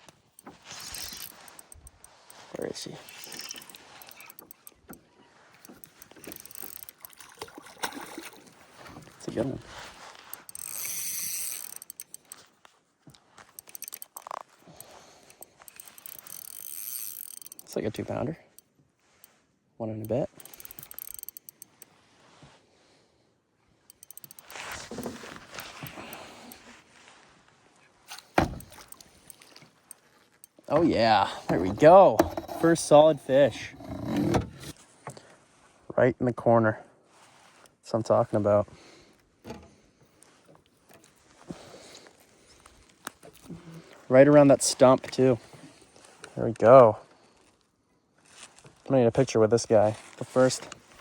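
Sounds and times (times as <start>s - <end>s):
fish thrashing and splashing: 0.4s - 4.9s, 5.7s - 9.2s
fishing reel cranking: 0.4s - 8.4s, 10.2s - 12.4s, 13.5s - 18.7s, 20.0s - 21.9s, 23.9s - 26.7s, 28.1s - 30.8s
mechanical clicks and knocks: 5.6s - 7.3s, 10.3s - 12.4s, 20.0s - 21.8s, 23.9s - 26.6s, 28.1s - 30.7s, 31.5s - 33.0s.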